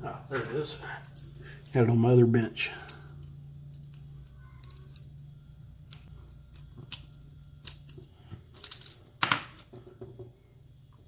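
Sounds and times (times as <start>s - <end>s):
steady low hum: 0.0s - 11.0s
tools and metal parts clicking: 0.3s - 2.0s, 2.7s - 9.6s.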